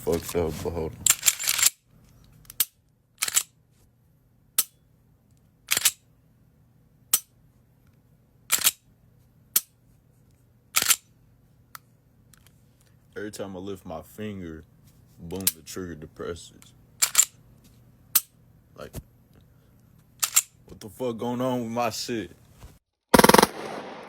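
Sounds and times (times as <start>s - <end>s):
pistol clicks and clacks: 2.5s - 3.5s, 4.6s - 4.8s, 5.7s - 6.0s, 8.5s - 8.8s, 10.8s - 11.0s, 17.0s - 17.4s.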